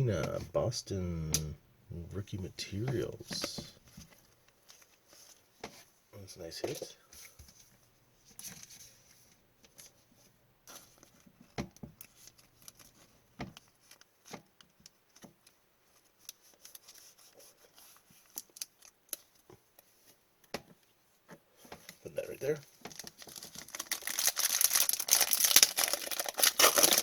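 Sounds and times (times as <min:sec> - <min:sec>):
cards rustling: 0:21.7 - 0:27.0.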